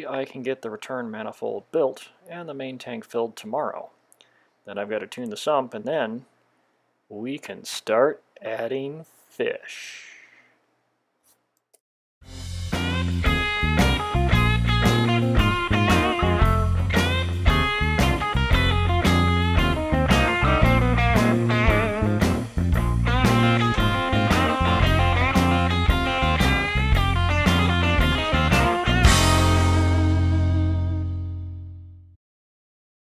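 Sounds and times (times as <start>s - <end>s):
blues-rock music with guitar: 12.3s - 31.6s.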